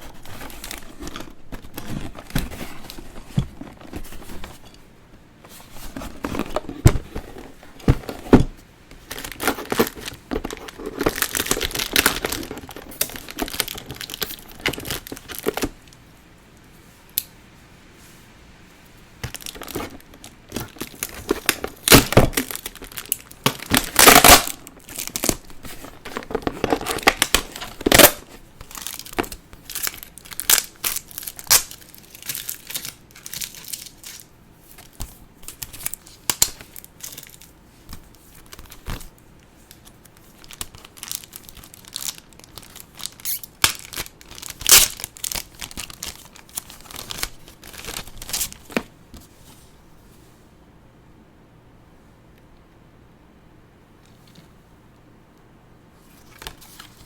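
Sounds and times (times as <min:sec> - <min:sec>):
packaging crinkling and tearing: 0:00.0 - 0:04.8, 0:05.7 - 0:15.9, 0:19.2 - 0:48.9.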